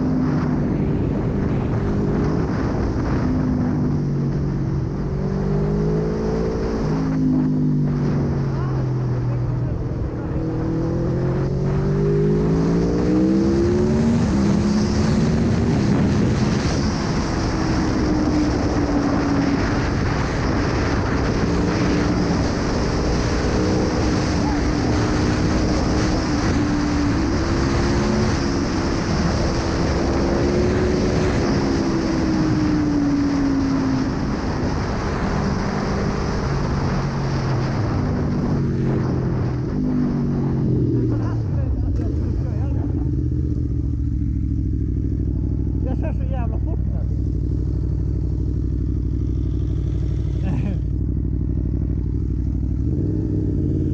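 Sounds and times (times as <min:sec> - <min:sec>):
motorcycle engine revving: 0:00.0 - 0:53.9
wind on microphone: 0:06.4 - 0:43.4.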